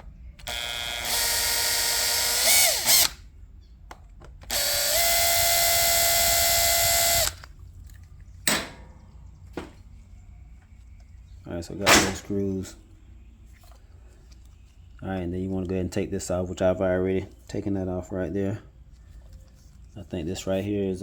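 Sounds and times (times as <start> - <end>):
power drill spinning: 0.4 - 3.2, 4.5 - 7.5.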